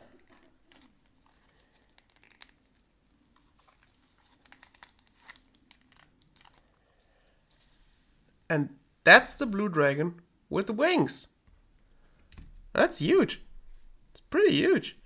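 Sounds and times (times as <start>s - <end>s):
plastic miniature clicks and rustles: 3.4s - 6.8s.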